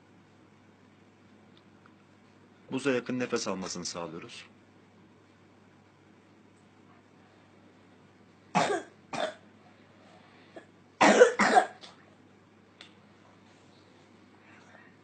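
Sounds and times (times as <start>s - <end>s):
boy coughing: 8.5s - 9.4s, 10.6s - 12.0s.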